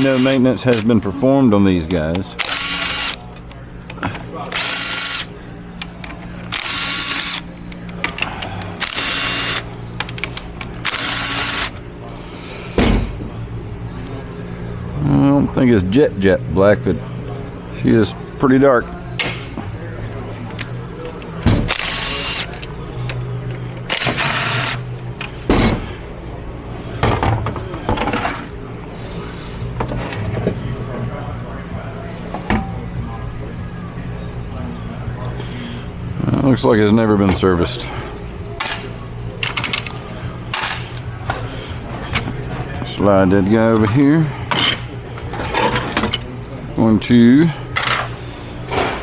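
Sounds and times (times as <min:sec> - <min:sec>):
power tool spinning bolts: 0:00.0 - 0:01.0, 0:02.3 - 0:03.3, 0:04.5 - 0:05.3, 0:06.0 - 0:07.5, 0:08.8 - 0:09.7, 0:10.6 - 0:11.8, 0:21.7 - 0:22.6, 0:23.9 - 0:24.9.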